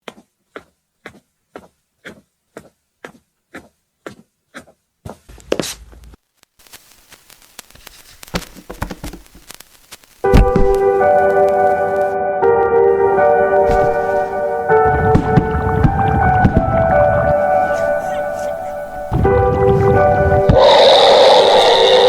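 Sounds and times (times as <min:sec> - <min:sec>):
crackling noise with clicks: 0:05.4 - 0:12.1, 0:13.7 - 0:20.7
sustained musical chord: 0:10.6 - 0:20.6
short rushing swell: 0:13.7 - 0:22.0.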